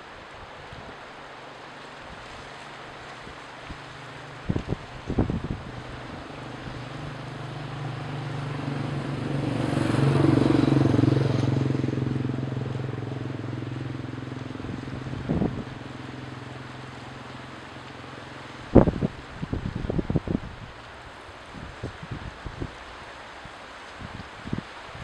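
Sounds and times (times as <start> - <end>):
wind noise: 0.0 - 1.1, 1.9 - 25.0
engine passing by: 2.2 - 20.8.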